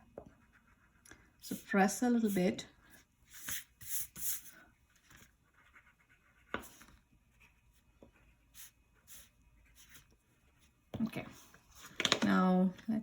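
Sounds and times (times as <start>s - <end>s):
crayon scratching on paper: 3.3s - 4.6s, 5.5s - 10.2s.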